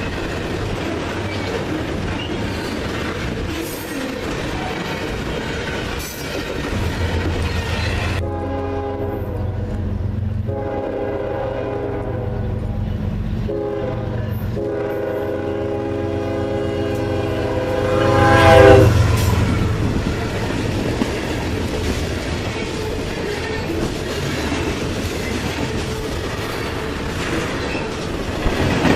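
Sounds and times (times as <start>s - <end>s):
low rumble of rolling train: 0.0s - 28.9s
locomotive air horn blasts: 8.0s - 9.8s, 10.4s - 12.8s, 13.4s - 19.9s.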